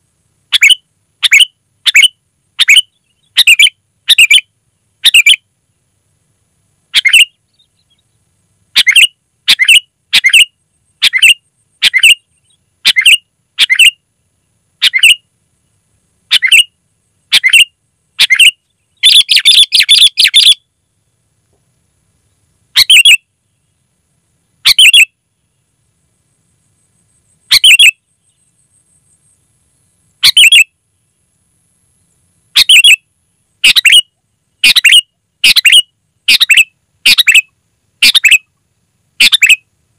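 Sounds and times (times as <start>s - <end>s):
bird calling: 0.5s - 5.4s, 6.9s - 14.0s, 14.8s - 15.2s, 16.3s - 20.7s, 22.7s - 23.7s, 24.6s - 25.1s, 27.2s - 29.4s, 30.2s - 30.7s, 32.6s - 33.0s, 33.6s - 38.5s, 39.2s - 39.6s.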